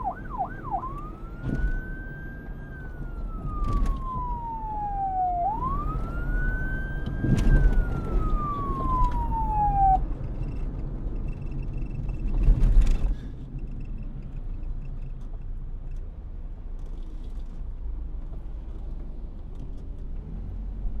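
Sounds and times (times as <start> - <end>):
police siren wailing: 0.0 - 10.1
low vehicle rumble: 0.0 - 21.0.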